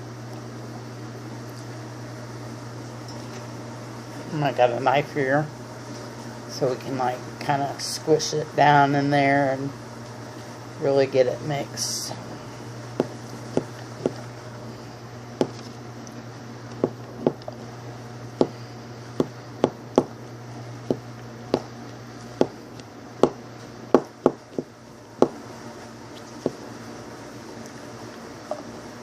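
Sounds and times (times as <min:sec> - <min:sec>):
squishing honey mixture: 0:11.0 - 0:23.4.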